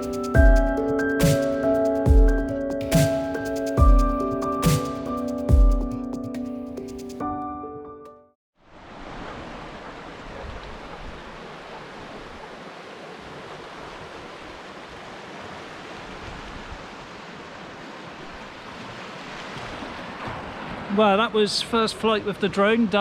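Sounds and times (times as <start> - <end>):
sea waves washing on shore: 8.6 - 23.0.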